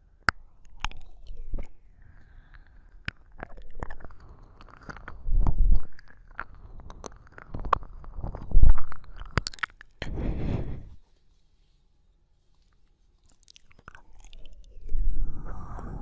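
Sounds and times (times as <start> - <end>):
wet mouth clicks and smacks: 0.2 - 10.0, 13.2 - 15.2.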